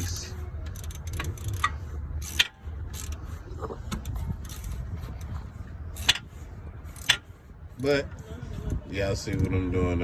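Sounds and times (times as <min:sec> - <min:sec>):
hand tools clicking and clanking: 0:00.0 - 0:06.3, 0:06.9 - 0:08.0.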